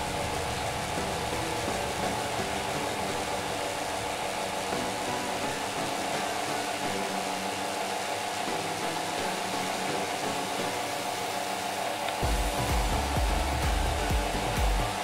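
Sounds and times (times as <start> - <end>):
electric fan motor whirring: 0.0 - 15.0
deep low sound: 12.2 - 15.0.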